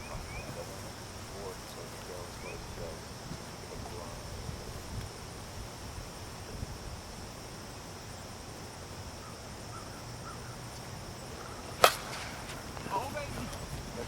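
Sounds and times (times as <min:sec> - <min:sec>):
high-pitched insect drone: 0:00.0 - 0:14.0
sharp crack: 0:11.5 - 0:13.6.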